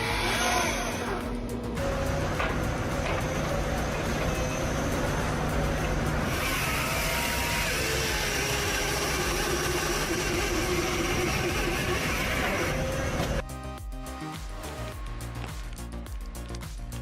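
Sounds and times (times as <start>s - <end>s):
heavy machine engine running: 0.0s - 13.4s.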